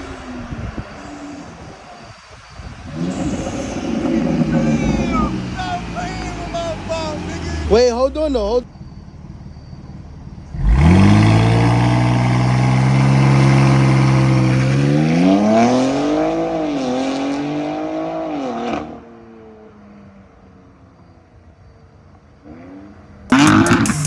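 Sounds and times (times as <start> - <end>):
car engine starting and revving: 0.0 - 8.6, 10.4 - 19.2, 22.4 - 24.0.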